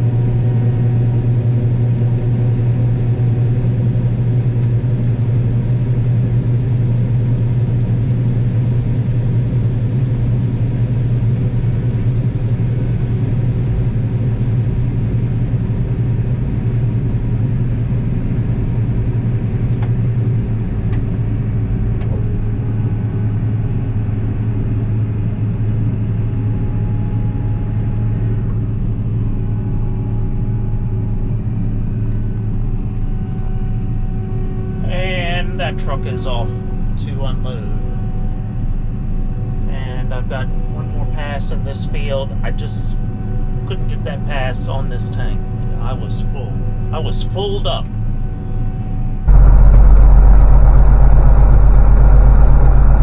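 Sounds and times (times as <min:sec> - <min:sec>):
combine harvester engine droning: 0:20.4 - 0:53.0.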